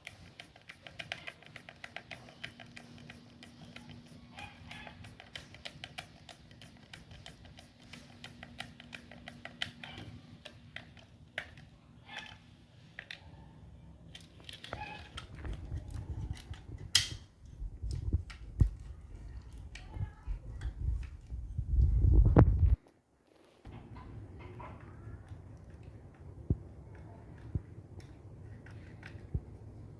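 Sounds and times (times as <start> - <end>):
sharp snap: 17.0 - 17.3.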